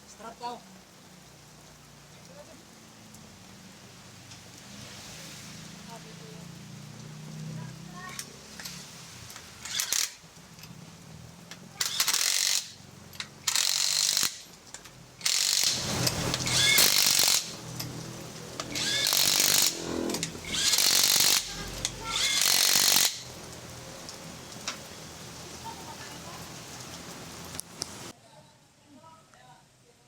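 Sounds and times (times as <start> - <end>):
power tool running: 9.6 - 10.2, 11.8 - 12.8, 13.4 - 14.5, 15.2 - 23.6.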